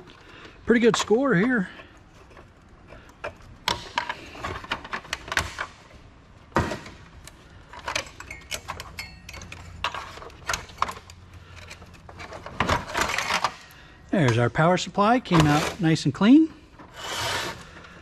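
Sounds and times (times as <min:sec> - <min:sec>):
metal and plastic rattles: 0:00.8 - 0:05.8, 0:07.6 - 0:14.4.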